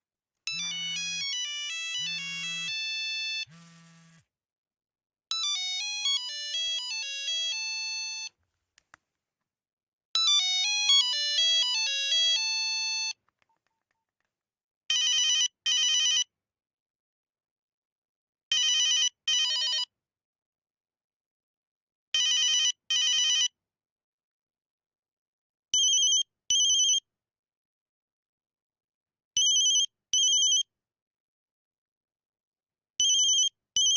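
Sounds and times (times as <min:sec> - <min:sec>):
monophonic phone ringtones: 0:00.5 - 0:03.5, 0:05.3 - 0:08.3, 0:18.6 - 0:19.9, 0:25.8 - 0:27.0, 0:29.4 - 0:30.6, 0:33.0 - 0:33.9.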